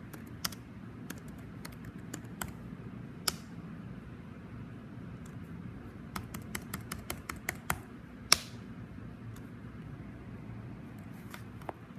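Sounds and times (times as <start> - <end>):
computer keyboard typing: 0.0 - 2.6, 6.1 - 8.5
low steady hum: 0.0 - 11.9.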